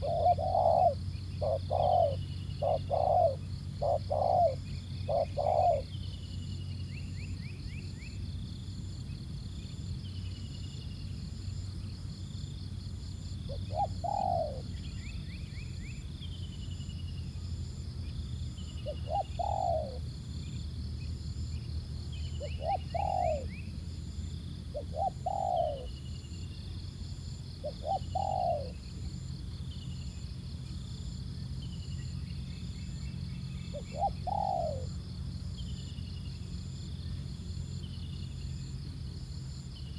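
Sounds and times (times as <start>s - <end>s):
doves cooing: 0.0s - 6.0s, 13.5s - 14.9s, 18.8s - 20.1s, 22.3s - 23.8s, 24.7s - 26.0s, 27.6s - 29.2s, 33.6s - 35.1s
small birds chirping: 0.0s - 8.2s, 13.5s - 39.9s.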